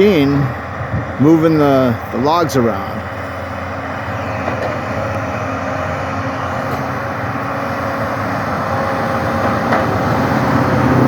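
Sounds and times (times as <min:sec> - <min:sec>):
heavy machine engine running: 0:00.0 - 0:11.0.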